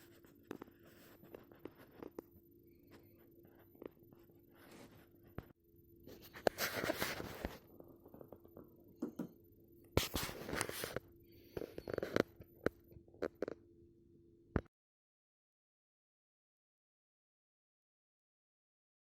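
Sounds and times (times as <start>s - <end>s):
faint steady hum: 0.0s - 14.7s.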